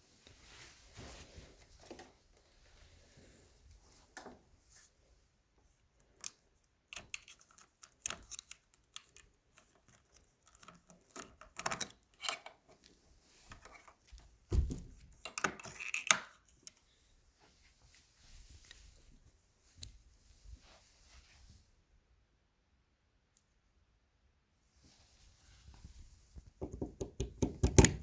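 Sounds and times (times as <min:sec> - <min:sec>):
heavy thump: 0:14.5 - 0:15.2
plastic clicks and taps: 0:26.6 - 0:28.0.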